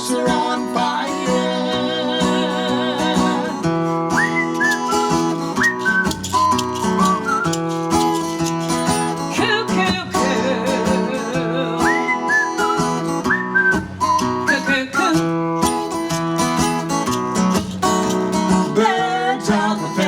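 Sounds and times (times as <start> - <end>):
strummed acoustic guitar: 0.0 - 20.0
gliding whistled notes: 4.1 - 8.5, 11.8 - 15.1.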